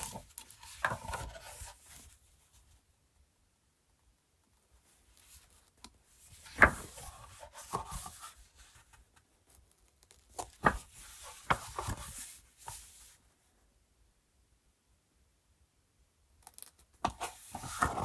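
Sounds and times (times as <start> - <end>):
book pages flipping: 0.0 - 2.3, 5.1 - 13.2, 17.0 - 18.0.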